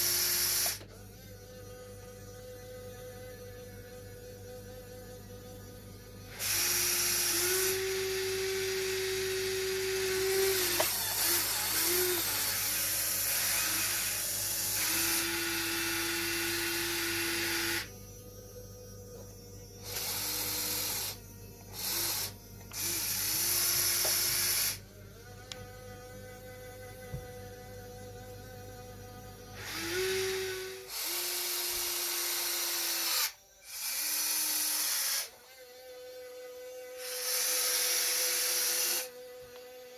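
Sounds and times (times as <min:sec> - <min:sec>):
small electric motors whining: 0:00.0 - 0:39.9
steady low hum: 0:17.8 - 0:30.9.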